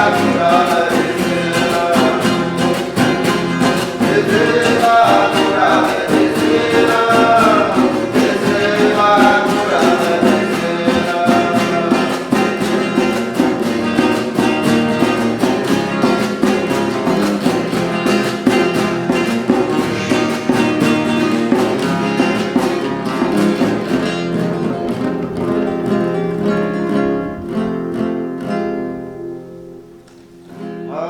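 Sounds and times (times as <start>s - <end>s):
voices singing a chant: 0.0s - 22.7s
strummed acoustic guitar: 0.0s - 31.0s.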